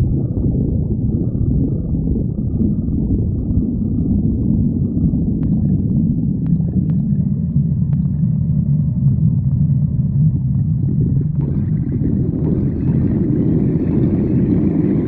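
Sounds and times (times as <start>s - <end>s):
stomach growling: 0.0s - 15.0s.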